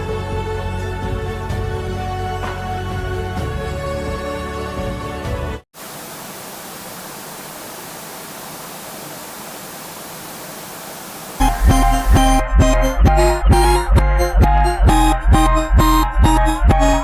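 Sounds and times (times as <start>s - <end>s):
static hiss: 5.8s - 12.4s
electronic music with heavy bass: 11.4s - 17.0s.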